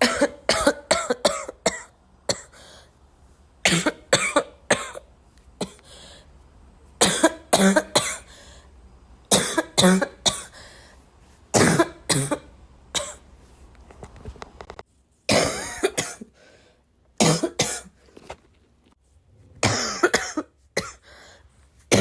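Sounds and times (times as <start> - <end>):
person coughing harshly: 0.0 - 2.6, 3.6 - 5.9, 7.0 - 8.3, 9.3 - 10.6, 11.5 - 13.2, 15.3 - 16.4, 17.2 - 17.9, 19.6 - 21.1.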